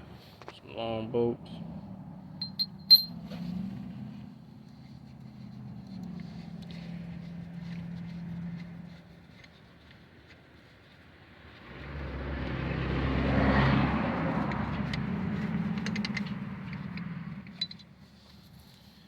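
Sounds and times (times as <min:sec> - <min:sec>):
car driving past: 0:11.4 - 0:15.6.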